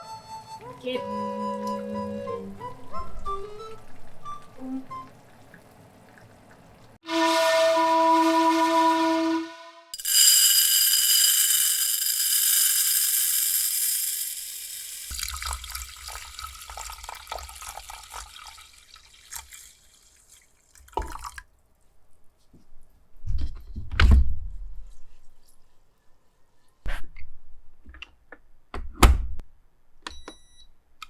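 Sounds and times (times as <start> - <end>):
kitchen tap running into sink: 10.0 - 21.4
water splashing and dripping: 15.1 - 21.4.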